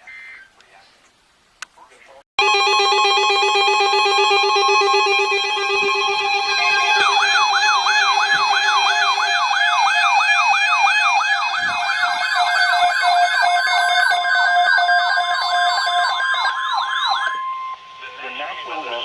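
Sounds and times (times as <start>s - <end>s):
low pulsing tone: 2.4s - 14.3s
electronic siren sweeps: 2.4s - 19.0s
steady high tone: 2.4s - 19.0s.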